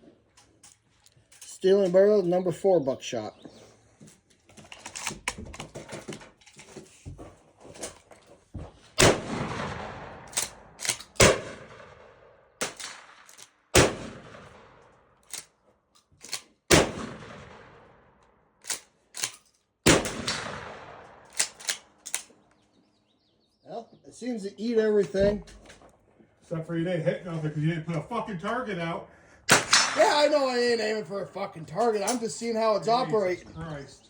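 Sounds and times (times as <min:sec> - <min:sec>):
shotgun blasts echoing: 0:09.0 - 0:14.9, 0:16.7 - 0:18.0, 0:19.8 - 0:21.9, 0:29.5 - 0:30.7
shotgun pump clacking: 0:10.3 - 0:11.3, 0:15.2 - 0:15.5, 0:16.2 - 0:16.4, 0:18.6 - 0:19.4, 0:21.3 - 0:22.3.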